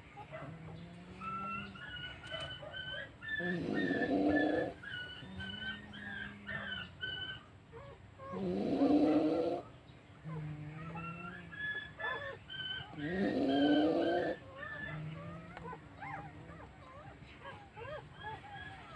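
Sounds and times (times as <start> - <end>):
puppy snoring: 13.0 - 16.6.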